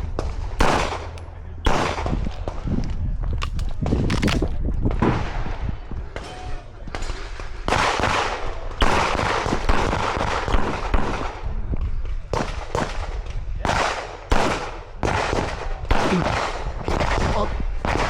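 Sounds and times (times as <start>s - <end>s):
pistol shots echoing: 0.0s - 2.6s, 7.7s - 11.5s, 12.3s - 18.0s.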